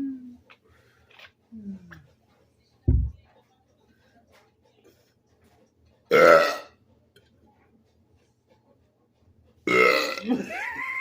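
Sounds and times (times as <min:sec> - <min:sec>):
man burping: 0:06.1 - 0:06.7, 0:09.7 - 0:10.5.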